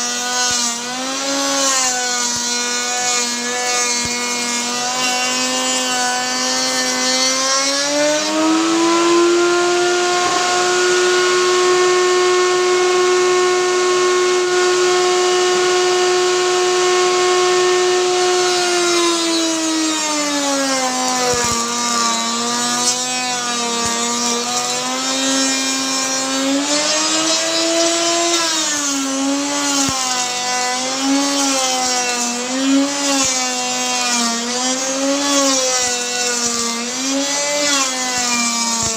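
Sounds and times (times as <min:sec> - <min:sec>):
wood router whining: 0:00.0 - 0:38.9.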